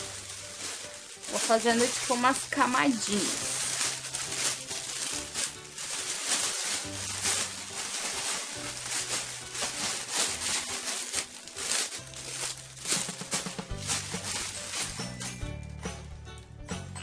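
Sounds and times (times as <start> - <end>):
cellophane crinkling: 0.0 - 15.7
background music: 0.0 - 17.0.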